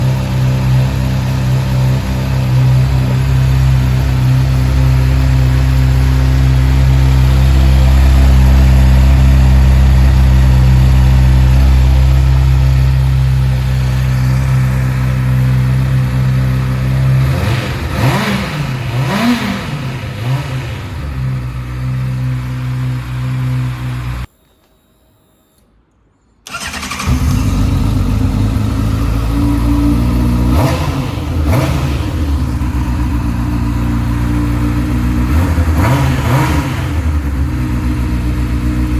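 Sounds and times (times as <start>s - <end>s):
motorcycle engine idling: 0.0s - 24.3s, 26.5s - 38.9s.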